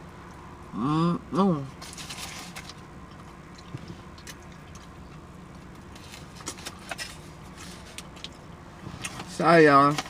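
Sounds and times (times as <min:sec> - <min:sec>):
low steady hum: 0:00.0 - 0:10.0
chewing food: 0:01.8 - 0:09.2.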